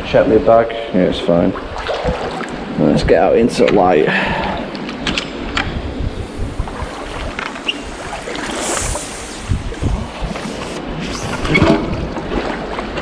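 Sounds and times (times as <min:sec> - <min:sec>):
wind buffeting microphone: 0:05.4 - 0:12.5
rushing river water: 0:06.2 - 0:11.6.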